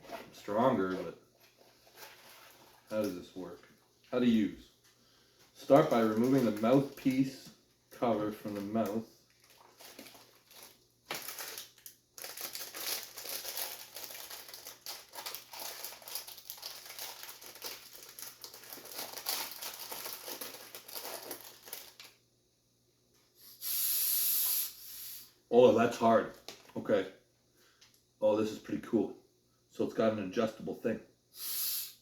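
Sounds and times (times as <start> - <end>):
plastic packaging crinkling: 5.6 - 22.2
breath drawn through valve: 23.4 - 25.3, 31.3 - 32.0.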